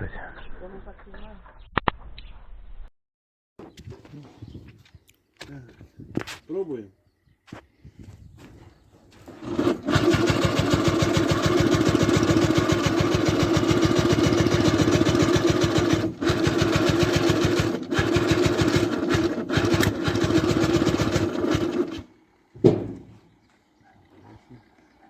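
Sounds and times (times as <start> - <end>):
diesel engine running: 9.2 - 25.0.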